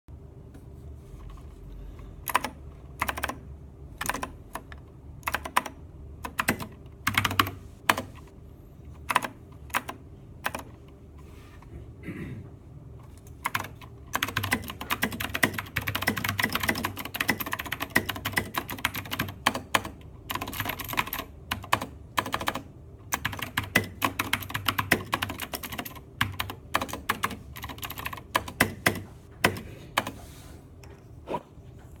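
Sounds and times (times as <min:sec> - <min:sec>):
mechanical keyboard typing: 0:02.2 - 0:08.3, 0:09.0 - 0:10.8, 0:13.3 - 0:30.2.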